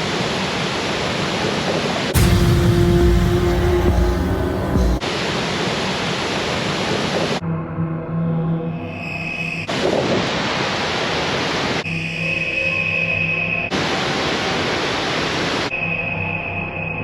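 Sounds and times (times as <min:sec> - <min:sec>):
sustained music tones: 0:02.2 - 0:05.0
loud rush of hiss: 0:02.2 - 0:07.4.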